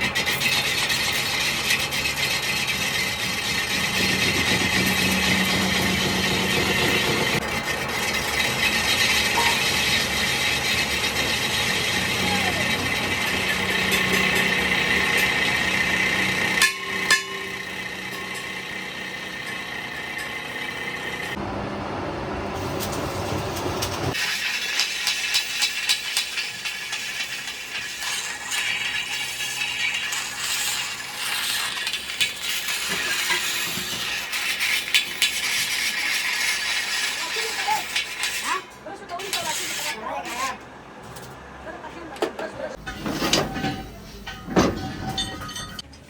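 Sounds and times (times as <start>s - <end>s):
machine running: 3.3s - 24.2s
metallic clinking and rattling: 42.8s - 45.9s.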